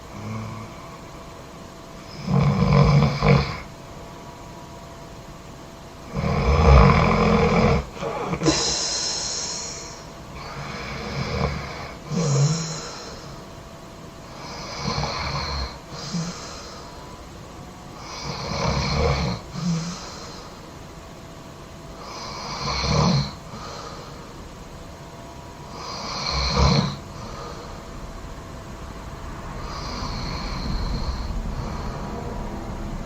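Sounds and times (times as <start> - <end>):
person snoring loudly: 0.1 - 1.0, 2.1 - 3.7, 6.0 - 13.4, 14.3 - 17.0, 18.0 - 20.6, 22.0 - 24.3, 25.7 - 27.8, 29.6 - 32.4.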